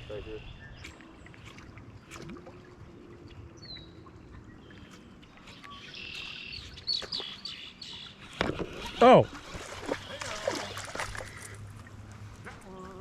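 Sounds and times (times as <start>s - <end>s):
small birds chirping: 3.4s - 9.2s.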